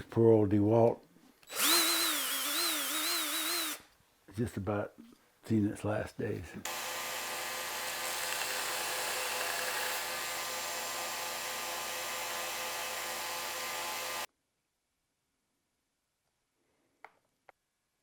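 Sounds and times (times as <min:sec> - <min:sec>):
power tool whining hum: 0:01.5 - 0:03.8, 0:06.7 - 0:14.3.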